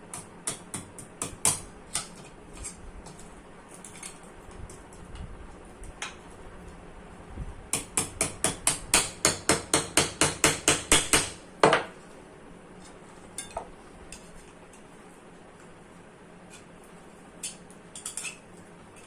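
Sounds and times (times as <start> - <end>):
hammer tapping on metal: 7.7 - 11.9.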